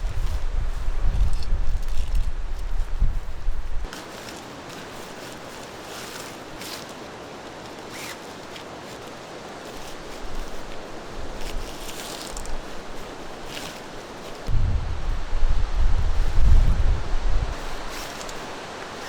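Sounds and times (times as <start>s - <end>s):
wind buffeting microphone: 0.0s - 3.9s, 14.5s - 18.4s
rustling swishes: 0.0s - 19.0s
stream rushing: 3.8s - 14.6s, 16.4s - 19.0s.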